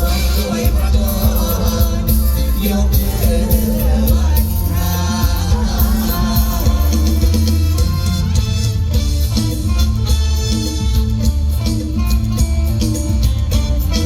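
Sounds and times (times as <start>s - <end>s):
person singing: 0.0s - 8.0s
drums: 0.0s - 14.0s
guitar: 0.0s - 14.0s
heavy bass: 0.0s - 14.0s
live band music: 0.0s - 14.0s.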